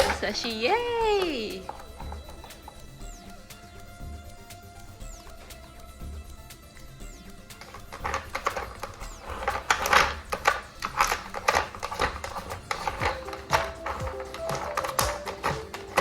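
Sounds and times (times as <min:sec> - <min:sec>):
plastic toy clattering: 0:00.0 - 0:03.0, 0:07.3 - 0:16.0.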